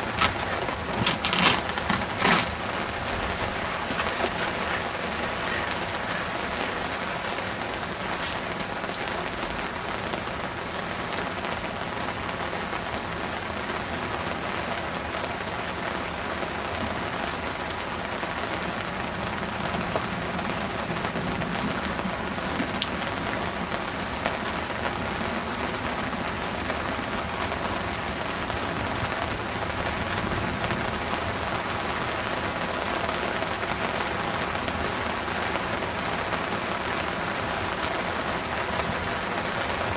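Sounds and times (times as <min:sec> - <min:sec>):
heavy rain pouring: 0:00.0 - 0:39.9
sharp raindrop hits: 0:00.0 - 0:39.9.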